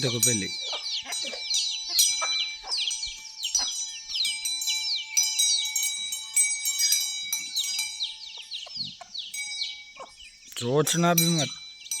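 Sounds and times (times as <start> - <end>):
chicks peeping: 0.0 - 6.1, 6.9 - 11.9.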